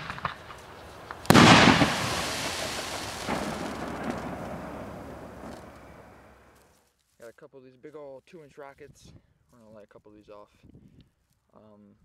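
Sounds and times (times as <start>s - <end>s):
echoing rumble: 0.0s - 6.5s
loud firework bang: 0.0s - 6.5s
faint firework pops: 0.0s - 6.6s.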